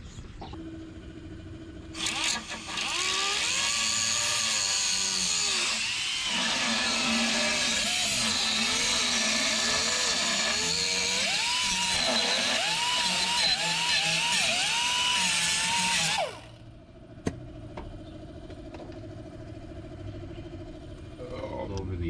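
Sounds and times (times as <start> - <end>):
power tool whining: 1.9 - 16.7.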